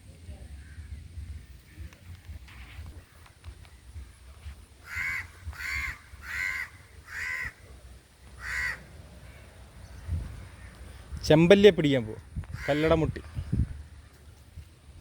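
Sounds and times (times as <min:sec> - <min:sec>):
bird calling: 0:00.4 - 0:07.7, 0:08.3 - 0:11.1, 0:12.5 - 0:14.3.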